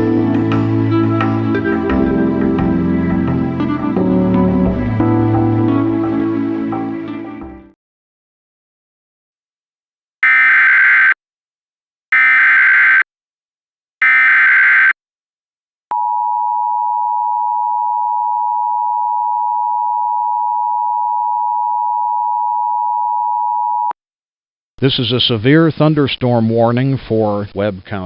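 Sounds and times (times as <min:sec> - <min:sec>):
screeching digital data bursts: 0:10.2 - 0:11.2, 0:12.2 - 0:13.0, 0:14.0 - 0:15.0
two-tone attention signal: 0:10.2 - 0:11.2, 0:12.2 - 0:13.0, 0:14.0 - 0:14.9.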